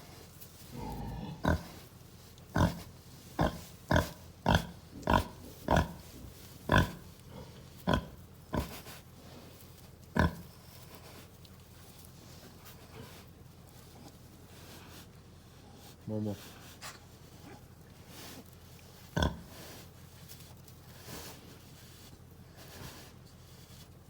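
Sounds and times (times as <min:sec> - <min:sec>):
pig grunting: 0:00.6 - 0:09.4, 0:10.1 - 0:11.0, 0:19.0 - 0:19.9.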